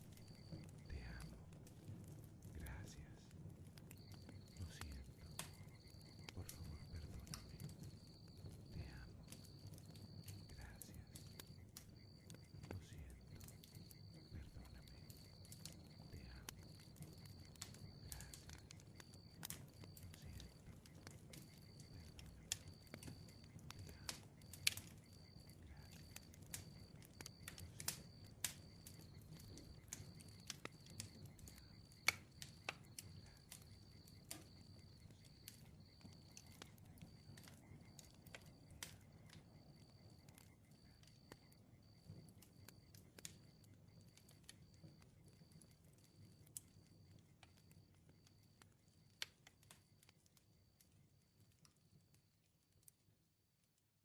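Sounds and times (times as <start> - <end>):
sharp clicks: 25.9 - 33.7.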